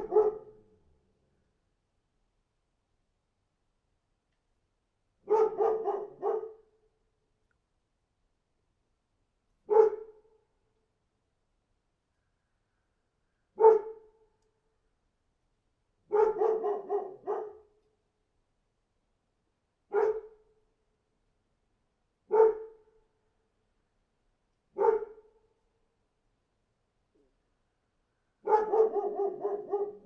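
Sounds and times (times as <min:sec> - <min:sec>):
dog barking: 0:00.0 - 0:00.6, 0:05.2 - 0:06.7, 0:09.7 - 0:10.2, 0:13.6 - 0:14.1, 0:16.1 - 0:17.7, 0:19.9 - 0:20.4, 0:22.3 - 0:22.9, 0:24.8 - 0:25.3, 0:28.4 - 0:30.0.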